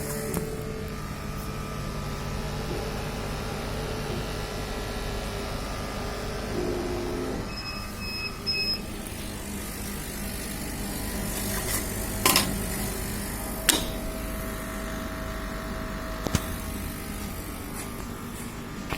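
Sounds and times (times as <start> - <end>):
laser engraver humming: 0.0 - 18.9
high electronic beeps: 7.5 - 8.9.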